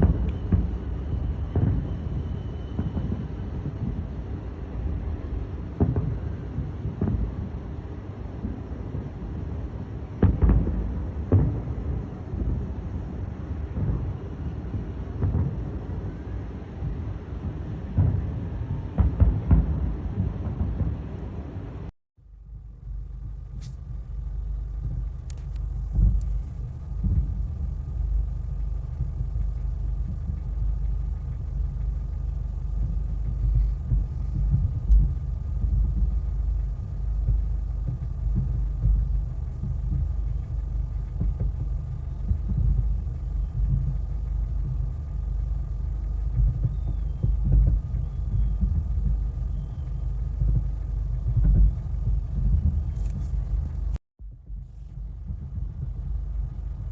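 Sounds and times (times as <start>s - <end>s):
distant fireworks rumbling: 0.0s - 56.9s.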